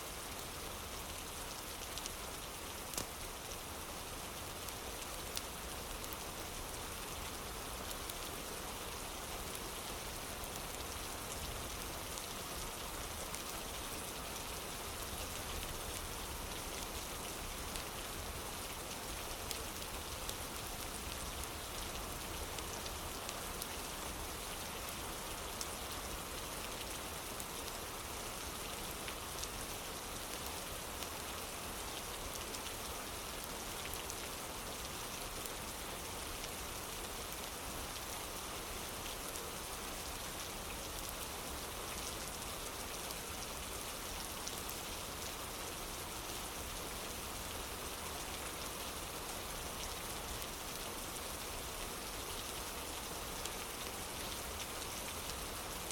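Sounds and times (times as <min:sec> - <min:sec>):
rain on wooden porch: 0:00.1 - 0:55.9.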